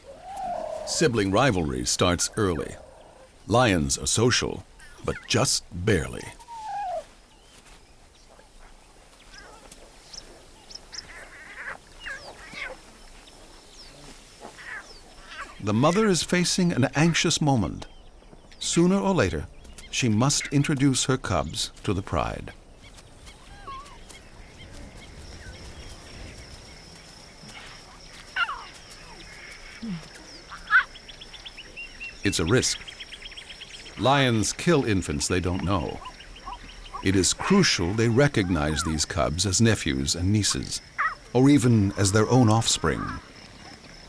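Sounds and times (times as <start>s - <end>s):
lion cubs squealing: 0.0s - 3.4s, 6.3s - 7.2s, 9.3s - 13.0s, 13.8s - 16.1s, 23.3s - 25.9s, 27.5s - 31.6s, 35.3s - 43.9s.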